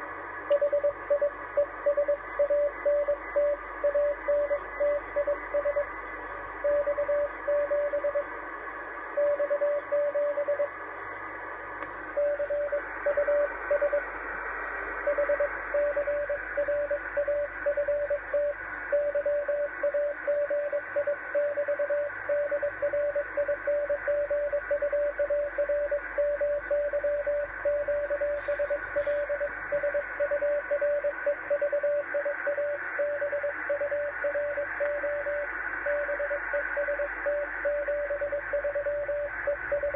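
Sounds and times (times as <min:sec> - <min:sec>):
morse code tone: 0:09.2 - 0:10.7, 0:12.2 - 0:14.0, 0:15.1 - 0:39.9
radio band hiss: 0:10.7 - 0:17.6, 0:27.5 - 0:30.2.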